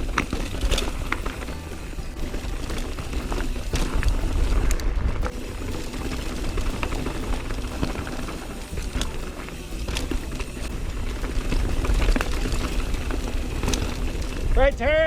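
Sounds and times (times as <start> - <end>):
bike clicks and rattles: 0.0 - 15.0
tyres rolling over rock: 0.0 - 15.0
wind rumble on microphone: 3.5 - 5.5.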